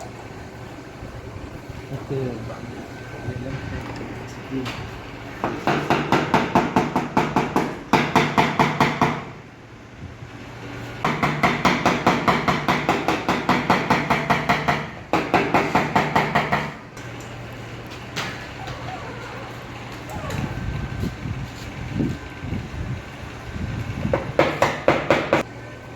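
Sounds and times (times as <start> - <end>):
hammer tapping on car panel: 5.4 - 9.3, 11.1 - 16.8, 24.2 - 25.4.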